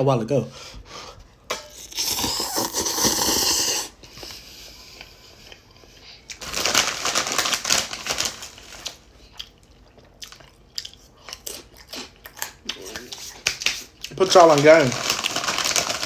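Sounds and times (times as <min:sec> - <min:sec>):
bag crinkling: 0:06.4 - 0:09.0, 0:14.2 - 0:16.0.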